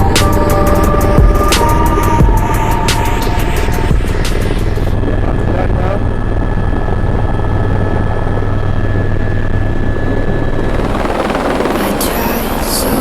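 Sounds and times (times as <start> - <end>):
helicopter rotor and engine drone: 0.0 - 13.0.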